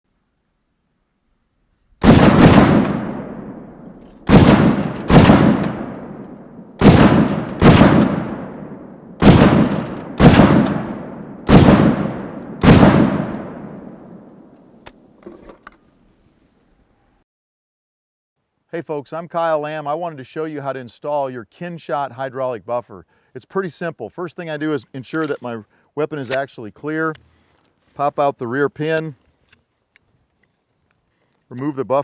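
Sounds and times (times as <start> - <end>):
rifle shots echoing: 2.0 - 15.1.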